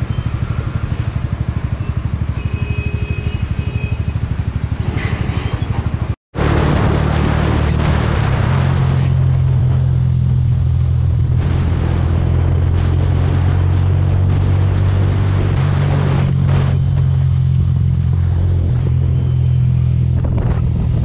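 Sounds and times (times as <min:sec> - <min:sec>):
motorcycle engine humming: 0:00.0 - 0:21.0
wind noise: 0:04.8 - 0:21.0.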